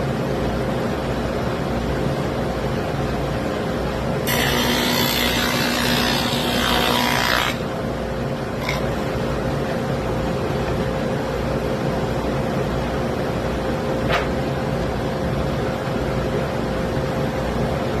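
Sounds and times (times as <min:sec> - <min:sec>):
electric router cutting wood: 0:04.2 - 0:07.7, 0:08.6 - 0:08.9.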